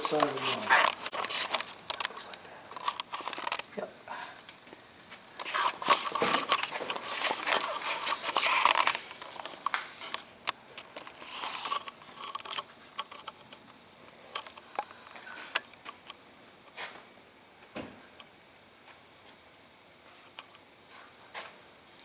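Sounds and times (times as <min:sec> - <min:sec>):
rustling and crinkling: 0:00.0 - 0:03.8, 0:04.4 - 0:13.7.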